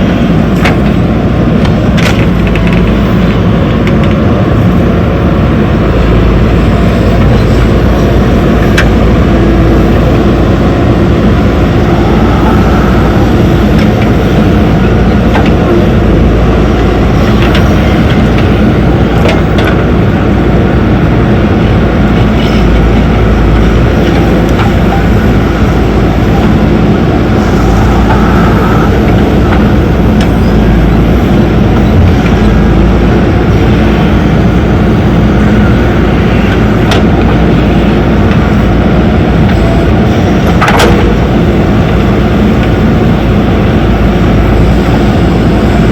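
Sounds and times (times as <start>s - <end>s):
diesel engines running: 0.0s - 45.9s.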